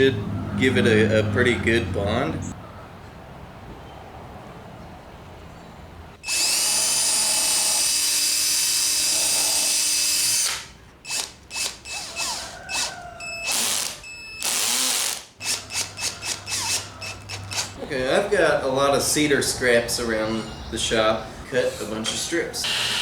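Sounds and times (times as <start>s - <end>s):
power tool motor whining: 6.2s - 17.8s, 22.6s - 23.0s.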